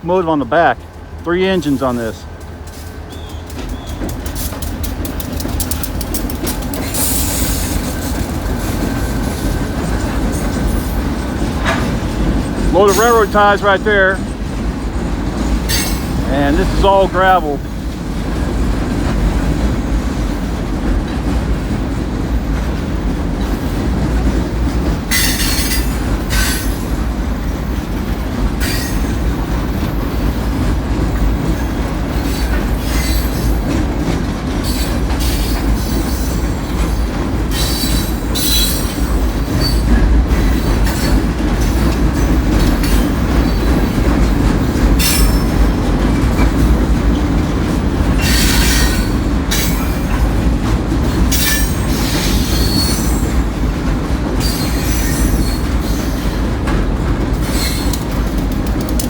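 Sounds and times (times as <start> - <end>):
train wheel squeals: 2.7 - 4.7, 6.5 - 13.4, 25.1 - 29.3, 31.4 - 33.8, 34.6 - 44.0, 45.0 - 45.8, 48.1 - 50.4, 51.1 - 53.4, 54.4 - 56.5, 57.3 - 58.2.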